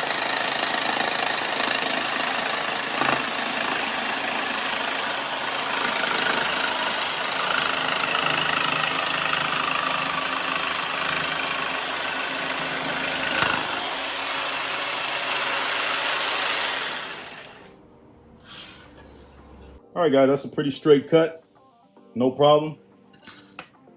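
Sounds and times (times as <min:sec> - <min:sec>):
jigsaw cutting: 0:00.0 - 0:17.7.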